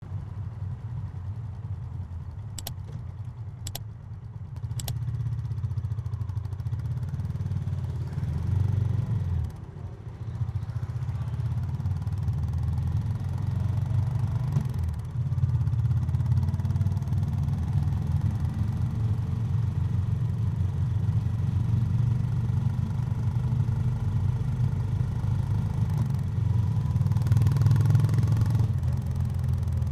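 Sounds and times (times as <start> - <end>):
motorcycle engine running: 0.1 - 29.9
sharp clicks: 2.6 - 3.0, 3.6 - 3.9, 4.6 - 5.0.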